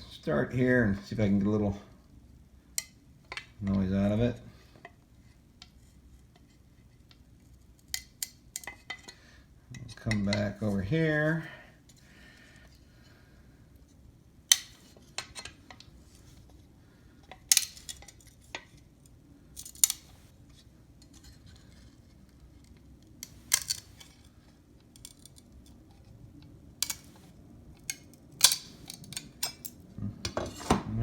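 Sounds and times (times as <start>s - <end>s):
glass cracking under pliers: 17.5s - 18.2s, 19.6s - 20.1s, 23.2s - 24.1s, 26.8s - 27.2s, 27.8s - 29.8s.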